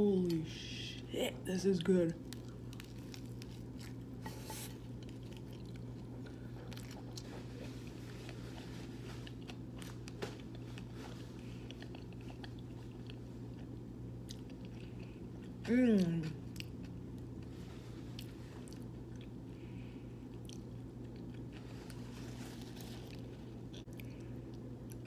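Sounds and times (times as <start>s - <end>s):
steady low hum: 0.0s - 25.0s
person chewing food: 1.8s - 25.0s.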